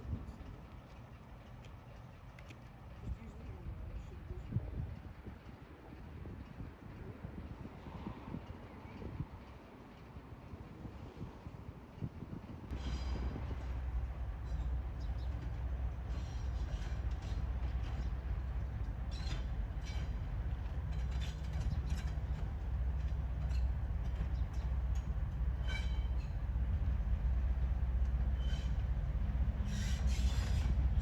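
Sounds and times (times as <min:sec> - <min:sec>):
train engine drone: 0:00.0 - 0:31.0
wheel squeals: 0:25.6 - 0:26.4, 0:28.3 - 0:28.9, 0:29.6 - 0:31.0.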